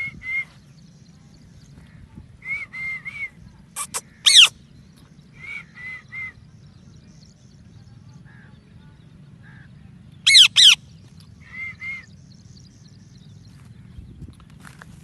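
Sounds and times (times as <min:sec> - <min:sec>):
parrot screeching: 0:03.8 - 0:04.5, 0:10.3 - 0:10.8
parrot chirping and squawking: 0:03.8 - 0:04.6, 0:10.3 - 0:10.8.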